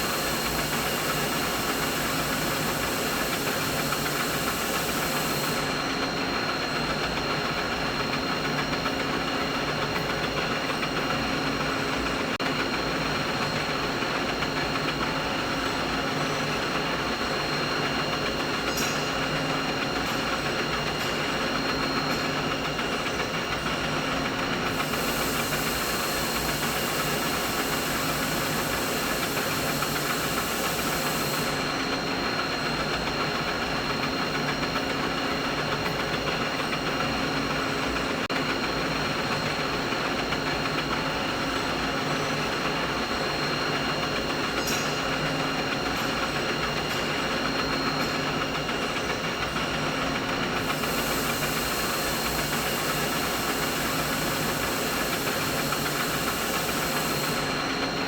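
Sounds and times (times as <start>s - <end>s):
machinery drone with hiss: 0.0s - 6.4s, 24.1s - 32.8s, 50.5s - 58.0s.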